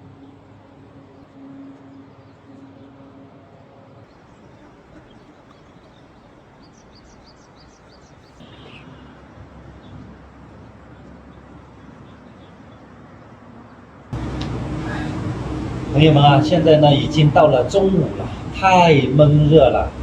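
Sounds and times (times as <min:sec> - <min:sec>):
bird chirping: 0:04.1 - 0:13.0
low hum: 0:14.1 - 0:20.0
creek rushing hiss: 0:14.2 - 0:20.0
low rumble: 0:14.2 - 0:20.0.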